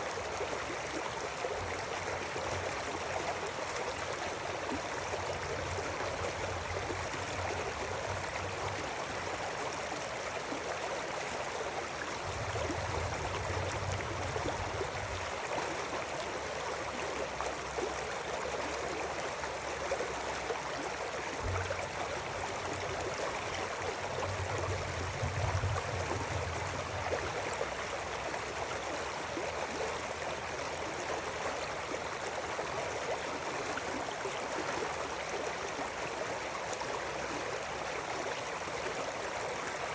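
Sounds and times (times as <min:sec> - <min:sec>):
river water flowing over stones: 0:00.0 - 0:39.9
low rumbles: 0:21.4 - 0:28.6.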